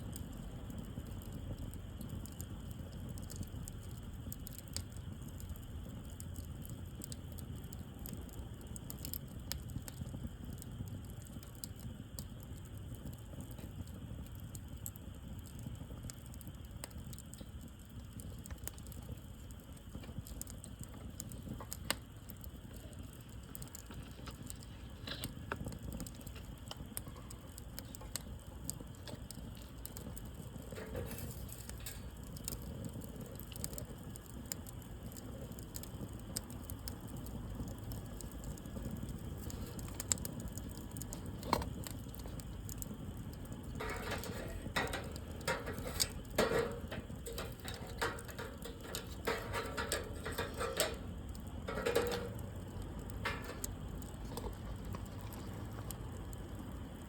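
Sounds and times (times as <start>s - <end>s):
wood fire crackling: 0.0s - 57.0s
steady low rumble: 42.4s - 57.0s.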